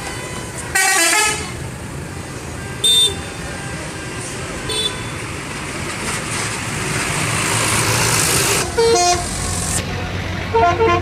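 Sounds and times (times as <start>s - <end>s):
multi-tone musical bus horn: 0.0s - 1.6s, 2.6s - 4.0s, 8.6s - 9.3s, 10.5s - 11.0s.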